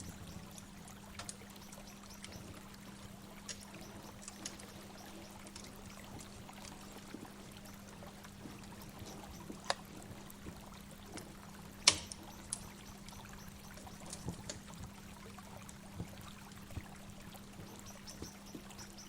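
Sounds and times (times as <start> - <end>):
low steady hum: 0.0 - 19.0
waterfall pouring and trickling: 0.0 - 19.0
sharp clicks: 11.8 - 12.7.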